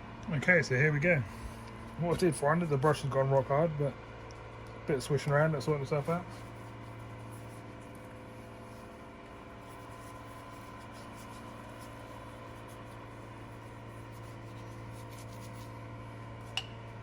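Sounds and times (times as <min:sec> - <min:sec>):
brush scratching on wheel: 0:05.0 - 0:15.8.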